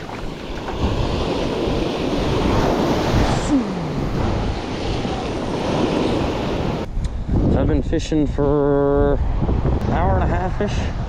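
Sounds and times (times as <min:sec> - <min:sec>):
surf washing against rocks: 0:00.0 - 0:06.9
wind buffeting microphone: 0:00.0 - 0:11.0.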